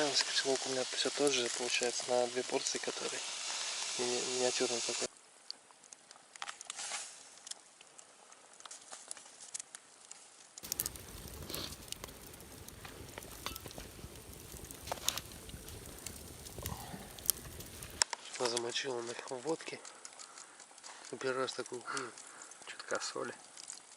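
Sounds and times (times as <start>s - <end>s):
campfire crackling and popping: 0.0s - 23.9s.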